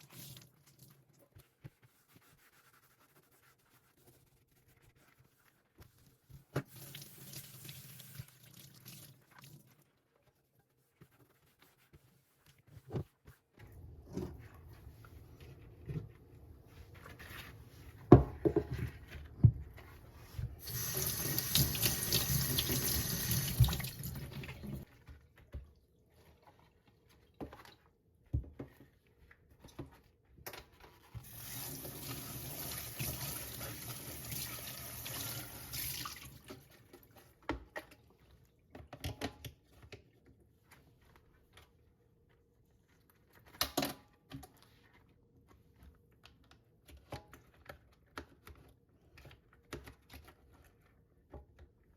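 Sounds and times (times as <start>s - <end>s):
knocks and clatter of items: 18.0s - 19.7s
tap water running into sink: 20.6s - 24.8s, 31.2s - 36.6s.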